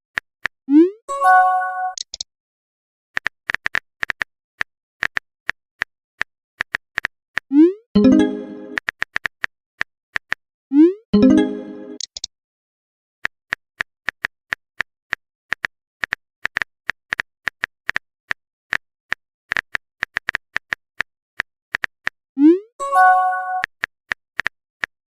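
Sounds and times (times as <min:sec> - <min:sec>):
keyboard typing clicks: 0:01.8 - 0:02.2, 0:06.6 - 0:09.3, 0:11.2 - 0:12.3.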